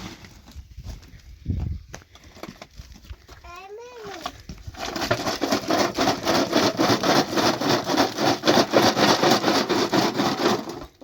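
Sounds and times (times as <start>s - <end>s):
hand saw cutting wood: 4.8s - 11.0s.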